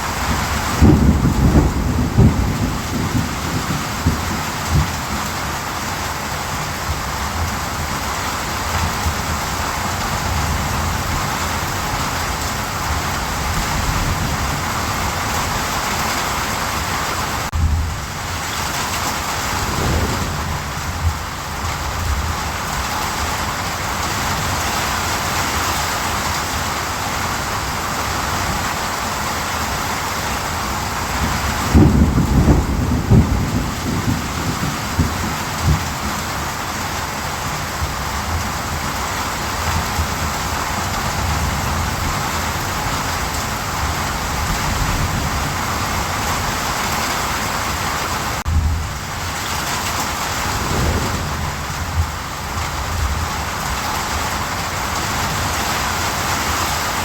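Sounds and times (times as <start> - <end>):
steady rain falling: 0.0 - 57.0
low rumble: 19.4 - 22.0, 50.3 - 53.2.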